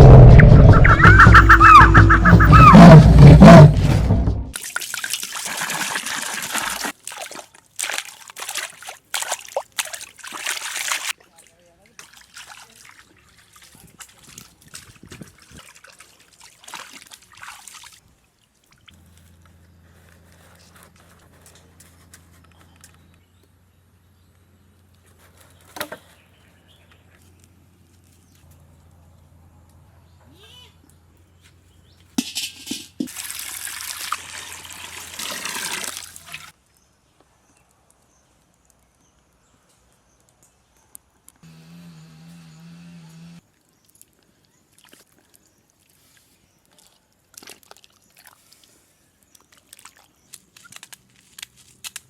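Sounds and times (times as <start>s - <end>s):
water splashing and pouring: 3.8s - 19.0s, 32.6s - 36.6s, 47.3s - 48.7s.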